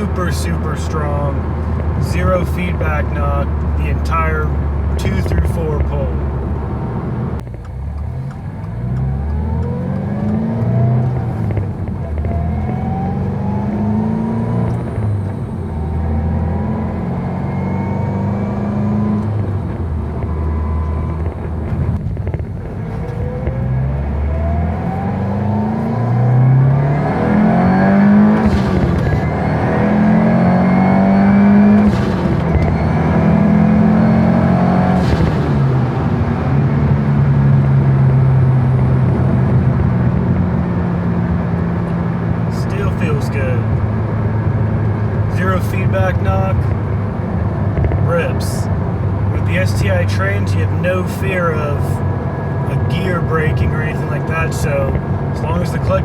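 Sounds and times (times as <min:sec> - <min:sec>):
car engine accelerating through gears: 0:00.0 - 0:56.0.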